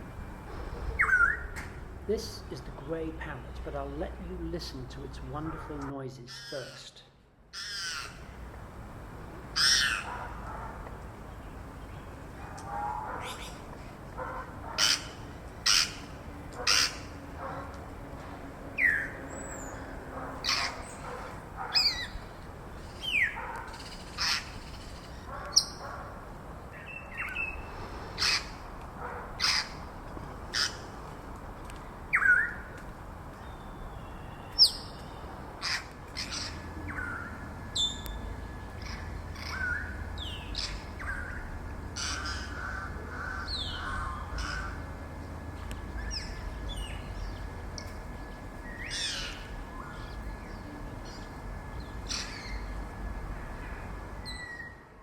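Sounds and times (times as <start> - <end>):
parrots whistling and squawking: 1.0 - 1.5, 9.6 - 10.2, 14.8 - 17.1, 20.4 - 21.0, 21.7 - 22.2, 29.4 - 29.8.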